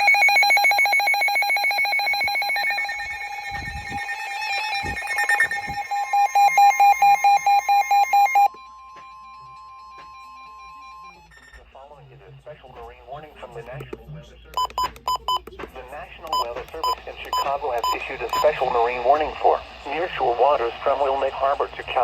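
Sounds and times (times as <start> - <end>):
fast-pulsing alarm beeping: 0.0 - 8.5, 16.3 - 19.4
steady warning alarm tone: 0.0 - 8.5, 16.2 - 21.7.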